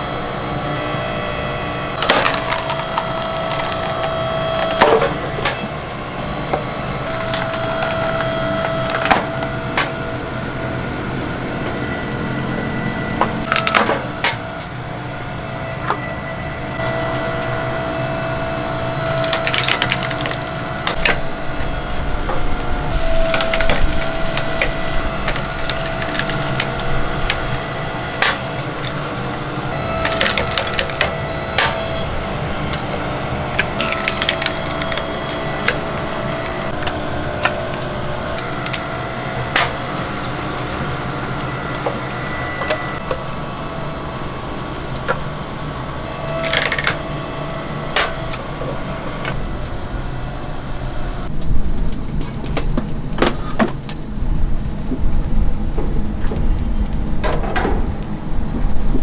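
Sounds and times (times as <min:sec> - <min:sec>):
mechanical hum: 0:00.0 - 0:59.0
wood clattering and cracking: 0:02.0 - 0:10.0, 0:13.2 - 0:14.4, 0:19.0 - 0:43.0, 0:46.1 - 0:47.0.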